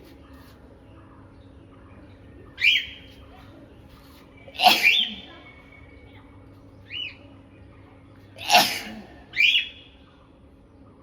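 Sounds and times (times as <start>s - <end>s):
person sneezing: 4.6s - 5.2s, 8.4s - 9.1s.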